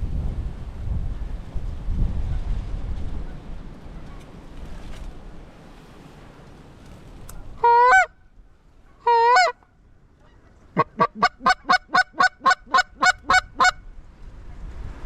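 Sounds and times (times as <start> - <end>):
goose call honks and clucks: 7.5 - 8.2, 9.0 - 13.8.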